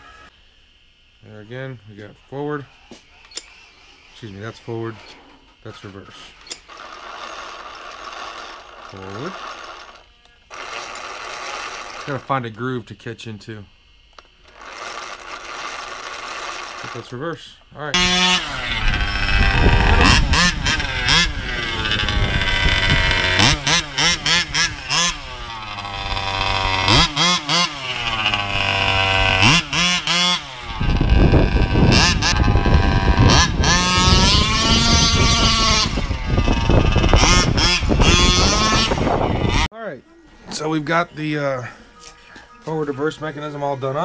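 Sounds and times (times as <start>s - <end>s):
small two-stroke engine revving: 6.6s - 12.3s, 14.4s - 17.1s, 17.9s - 39.7s.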